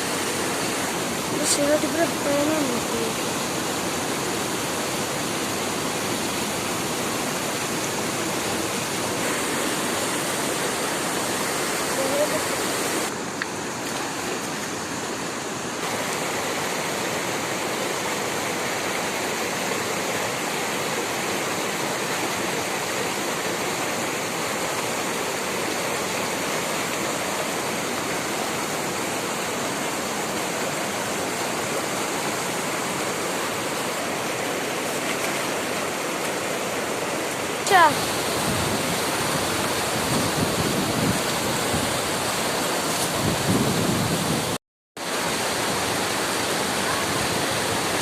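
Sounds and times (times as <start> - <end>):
river water rushing: 0.0 - 48.0.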